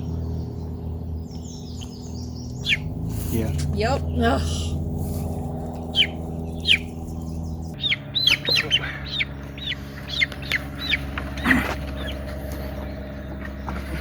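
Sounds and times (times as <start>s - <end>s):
chick peeping: 5.9s - 7.0s, 7.7s - 12.2s.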